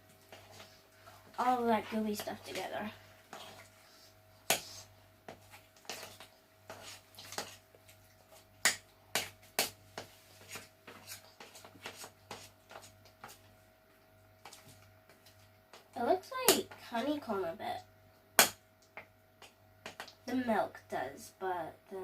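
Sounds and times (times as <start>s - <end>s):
spoon stirring batter: 0.1s - 13.5s.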